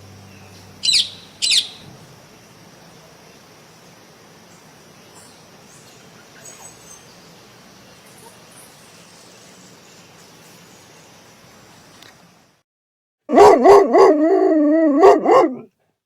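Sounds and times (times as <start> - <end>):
background hiss: 0.0 - 12.6
faint high bird chirps: 0.2 - 1.9, 5.1 - 7.4.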